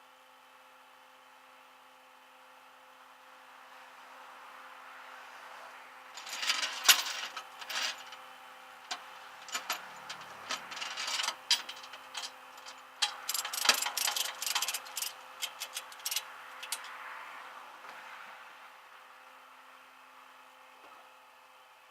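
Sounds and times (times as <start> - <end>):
metallic clicking and rattling: 6.2 - 8.2, 8.9 - 16.9
steady low hum: 6.2 - 16.8.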